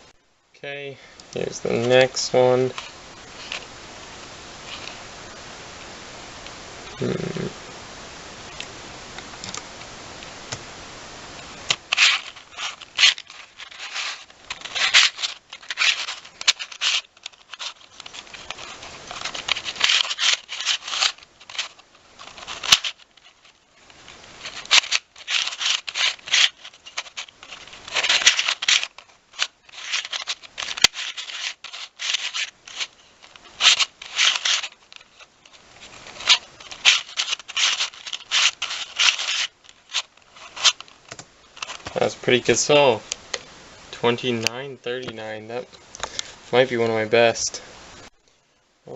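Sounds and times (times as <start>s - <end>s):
plastic puzzle pieces clicking: 11.7s - 42.0s.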